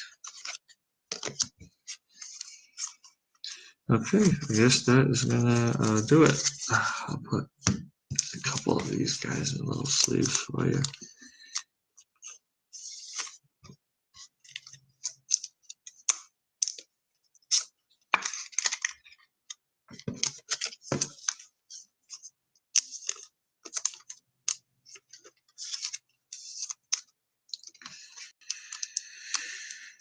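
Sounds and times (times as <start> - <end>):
plastic sleeves crinkling and clicking: 0.0 - 3.5, 13.0 - 29.5.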